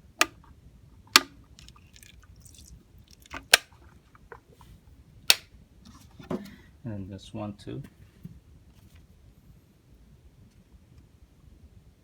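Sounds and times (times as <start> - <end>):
sharp plastic clicks: 1.2 - 1.8, 3.1 - 3.8
water dripping and squishing: 1.2 - 4.6.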